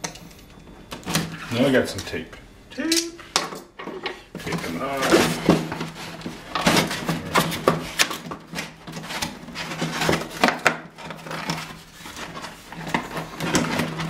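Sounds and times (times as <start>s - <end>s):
cardboard packaging rustling: 4.4s - 14.0s.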